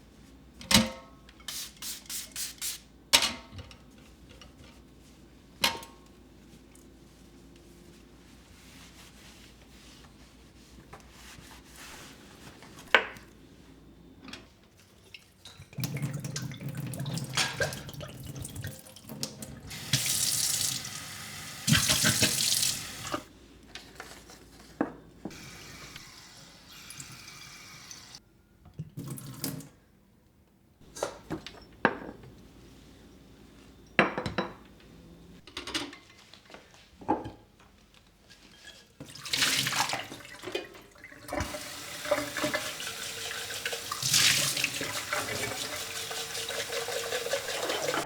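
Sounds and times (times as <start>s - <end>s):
tap water running into sink: 15.6s - 23.3s, 25.3s - 28.2s, 28.9s - 29.7s, 39.1s - 48.0s.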